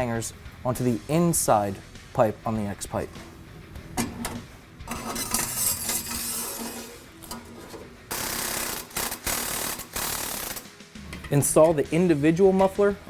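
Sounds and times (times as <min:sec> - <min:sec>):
metal pipe scraping on metal: 0:04.2 - 0:08.0.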